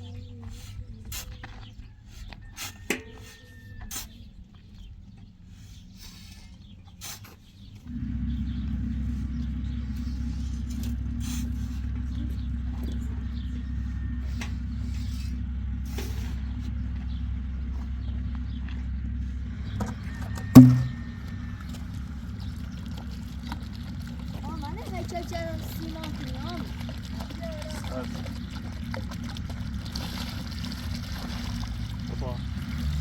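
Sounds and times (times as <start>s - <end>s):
engine low rumble: 0.0s - 33.0s
sharp loud knock: 20.6s - 21.0s.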